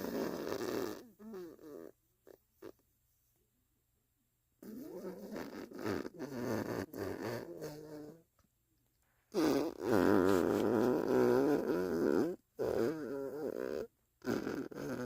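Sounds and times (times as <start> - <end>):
farts: 0.0 - 1.9, 4.6 - 8.2, 9.3 - 15.0.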